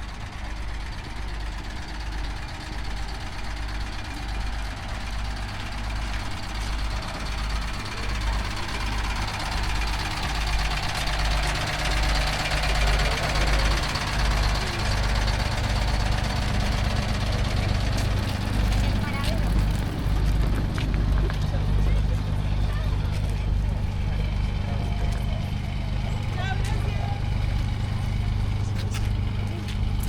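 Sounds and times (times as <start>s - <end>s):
train diesel engine idling: 0.0s - 30.0s.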